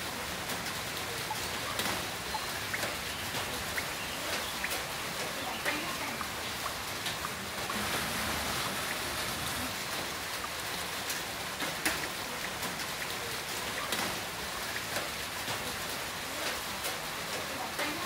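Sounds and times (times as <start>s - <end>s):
heavy rain falling: 0.0s - 18.0s
raindrops ticking on a surface: 0.0s - 18.0s.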